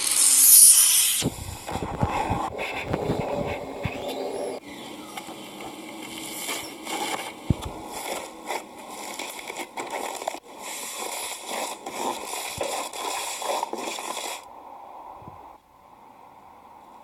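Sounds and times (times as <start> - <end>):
slime squishing and crackling: 6.4 - 14.5.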